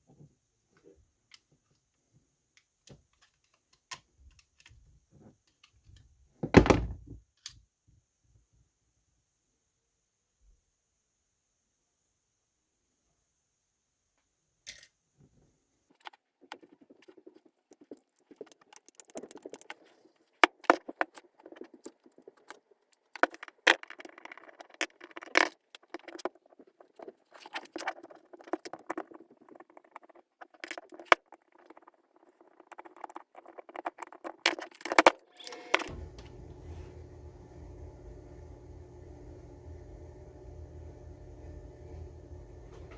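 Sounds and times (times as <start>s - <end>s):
metal parts clicking and rattling: 16.0s - 35.9s
steady hum: 35.8s - 42.9s.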